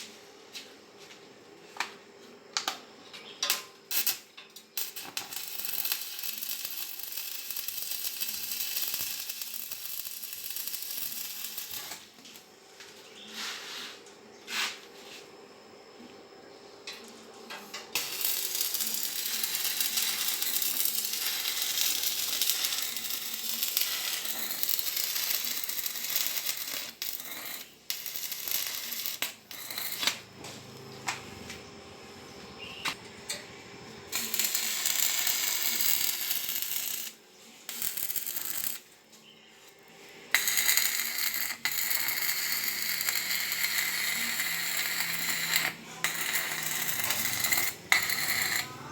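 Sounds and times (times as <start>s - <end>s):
grainy mechanical tool noise: 17.7s - 26.9s, 27.5s - 35.0s, 45.5s - 48.9s.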